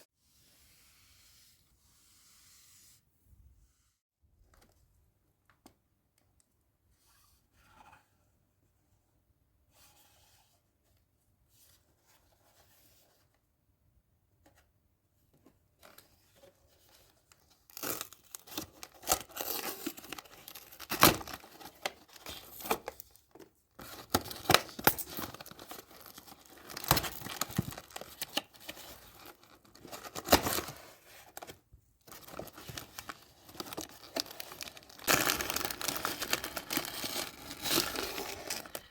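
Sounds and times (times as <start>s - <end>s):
packaging tearing and crinkling: 17.7s - 23.1s, 23.8s - 31.5s, 32.1s - 38.9s.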